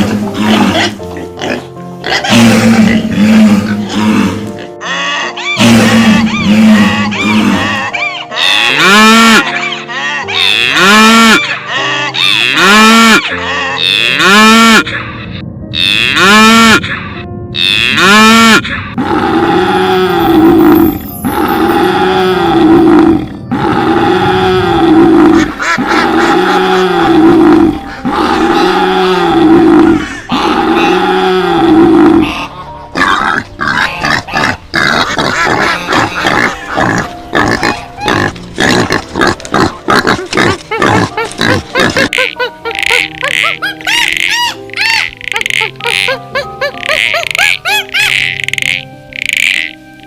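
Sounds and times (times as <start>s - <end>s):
deeper animal call: 2.2s - 25.5s
animal calls rising and falling: 42.7s - 49.8s.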